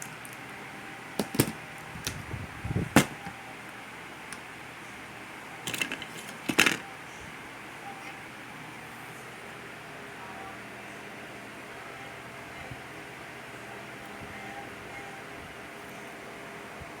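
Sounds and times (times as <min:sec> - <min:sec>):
metal tools clicking and scraping: 0:05.7 - 0:06.8.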